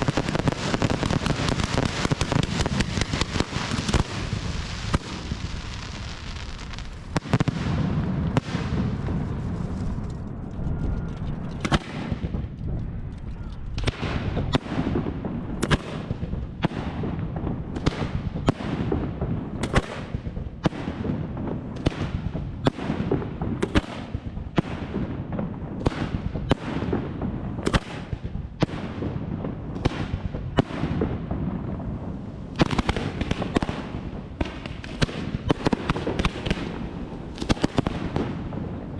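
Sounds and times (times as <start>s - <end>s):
fireworks bangs: 0.0s - 38.9s
fireworks crackling: 0.0s - 38.9s
low rumble: 7.8s - 14.5s.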